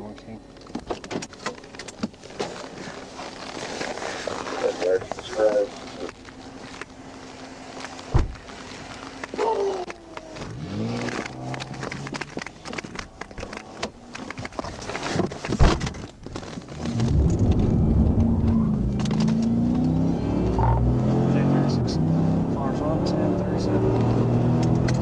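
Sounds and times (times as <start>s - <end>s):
car engine revving: 10.4s - 12.5s, 16.7s - 25.0s.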